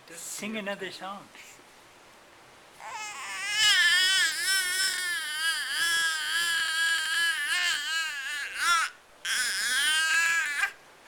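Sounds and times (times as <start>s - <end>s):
child wailing: 2.8s - 10.8s.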